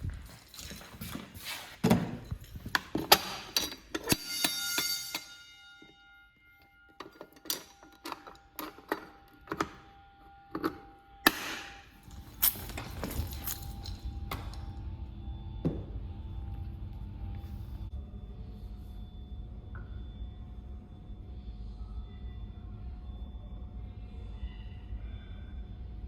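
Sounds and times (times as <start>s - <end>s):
ringing metallic clang: 3.1s - 9.0s.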